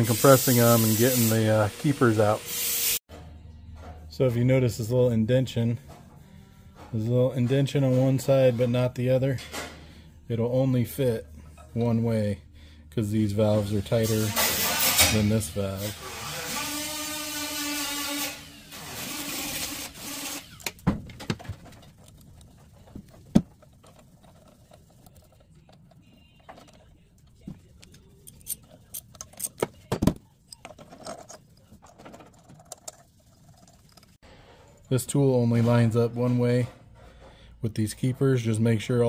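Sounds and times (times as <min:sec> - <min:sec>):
metal tool clinks and knocks: 0:27.8 - 0:33.0.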